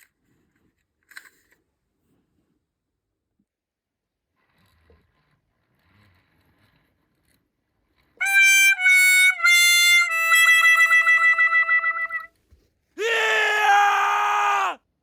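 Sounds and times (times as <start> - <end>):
reedy horn-like tone: 8.2 - 12.3.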